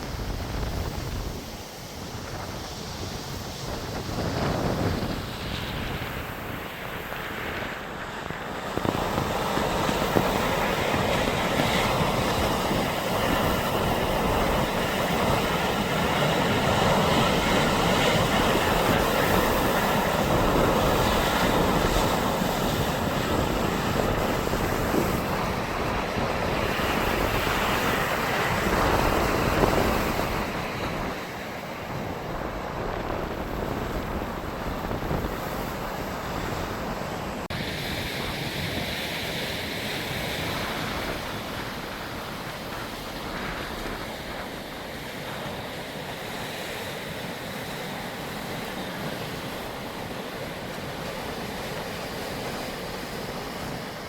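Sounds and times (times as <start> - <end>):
sea surf rushing: 0.0 - 54.0
wind buffeting microphone: 0.0 - 54.0.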